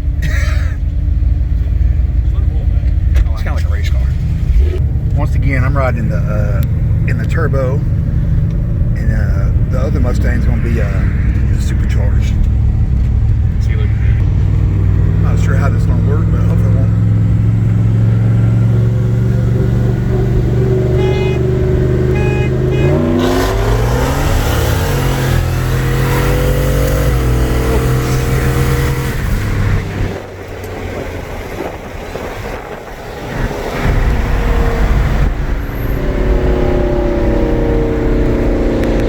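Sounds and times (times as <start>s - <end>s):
car engine accelerating: 0.0s - 39.0s
short beeps: 20.9s - 21.5s, 22.1s - 23.2s.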